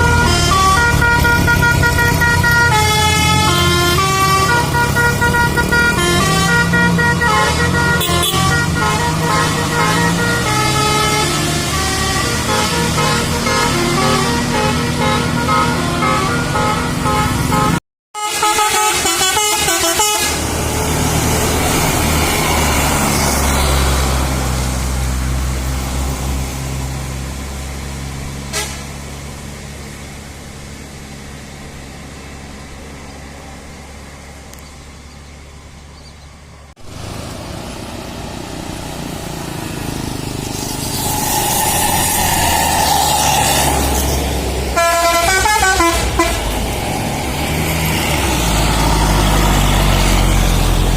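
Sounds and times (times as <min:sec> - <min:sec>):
bus musical horns: 0:00.0 - 0:24.4, 0:27.7 - 0:29.6, 0:40.5 - 0:50.9
bus engine passing: 0:00.0 - 0:50.9.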